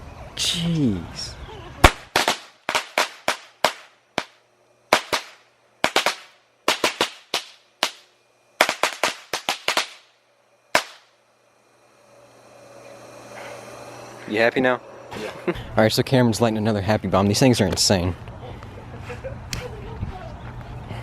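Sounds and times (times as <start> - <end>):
firecrackers banging: 1.8 - 11.2.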